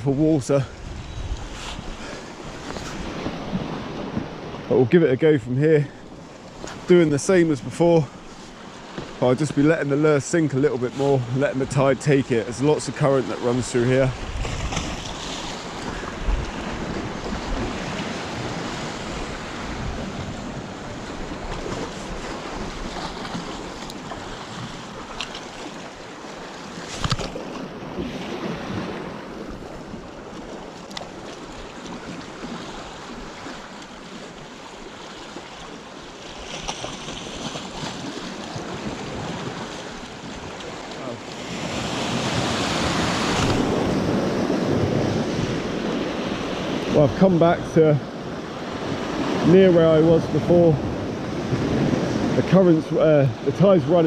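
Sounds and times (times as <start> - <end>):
wind buffeting microphone: 0.0 - 4.6, 13.6 - 24.8, 41.5 - 47.0, 50.6 - 52.4
sea water washing on rocks: 6.5 - 48.0.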